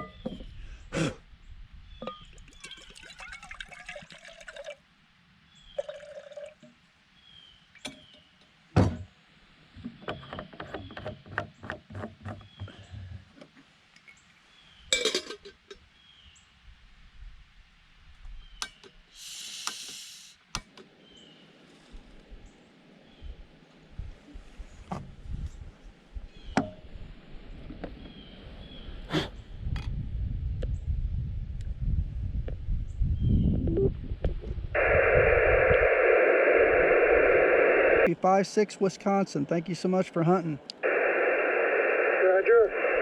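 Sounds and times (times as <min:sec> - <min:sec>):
liquid being poured: 0:02.1 - 0:04.8, 0:05.8 - 0:06.7.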